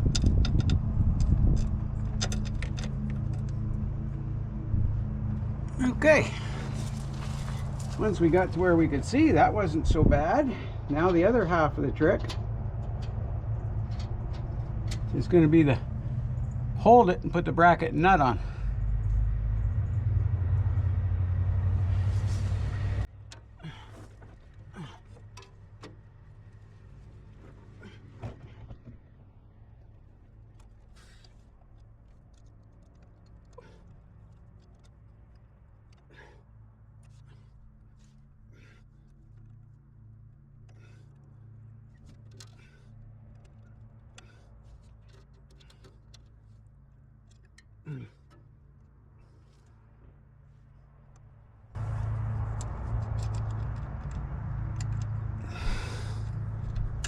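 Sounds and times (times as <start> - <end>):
steady low rumble: 0.0 - 25.1
steady low hum: 0.0 - 57.0
light clicks and taps of tools: 25.1 - 26.0, 30.5 - 36.1, 40.6 - 50.2, 51.9 - 55.4
clicks of hardware handled: 42.0 - 46.6.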